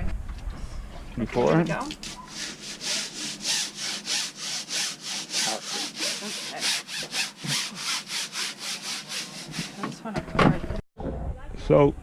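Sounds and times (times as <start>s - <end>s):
brush scrubbing: 1.9s - 10.0s.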